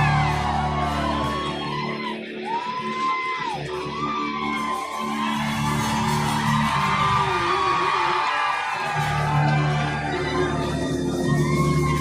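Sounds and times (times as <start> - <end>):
audience shouting and whooping: 0.0 - 12.0.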